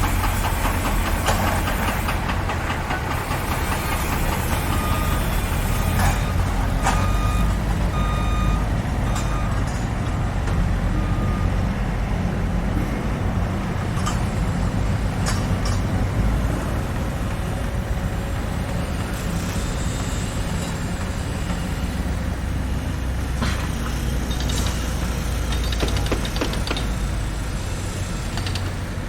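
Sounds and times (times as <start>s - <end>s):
heavy machinery engine rumble: 0.0s - 29.0s
sharp knocks and clicks: 23.4s - 27.1s.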